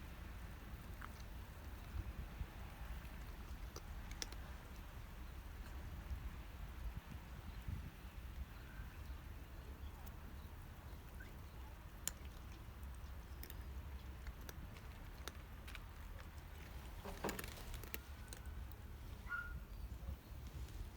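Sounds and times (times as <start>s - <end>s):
wind rumbling on microphone: 0.1s - 3.7s, 4.8s - 9.3s
rustling noise: 16.5s - 19.3s, 20.3s - 20.9s.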